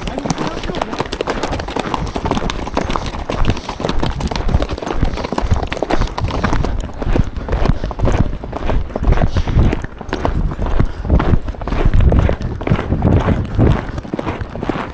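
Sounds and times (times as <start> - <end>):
horse hoofbeats on trail: 0.0 - 14.9
microphone rumble and jostling: 0.0 - 14.9.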